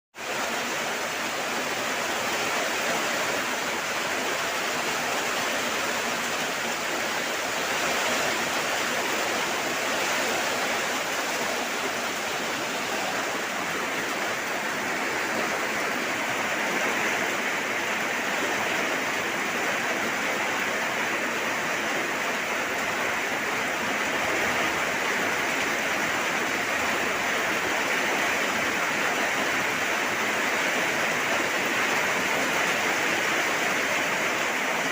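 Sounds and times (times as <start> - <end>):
heavy rain: 0.2 - 34.9.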